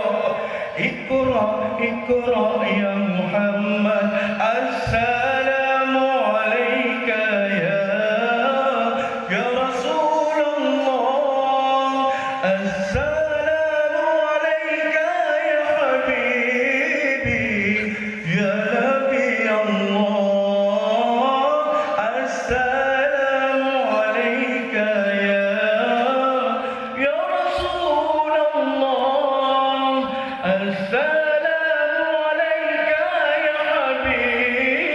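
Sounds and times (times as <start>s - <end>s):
man singing melismatic lines: 0.0s - 34.9s.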